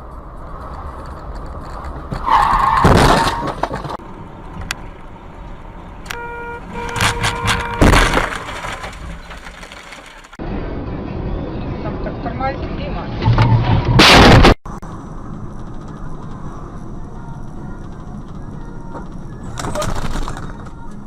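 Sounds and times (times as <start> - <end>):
car crash: 0.6 - 4.0, 6.7 - 10.4, 13.2 - 14.8
car horn honking: 6.1 - 9.0.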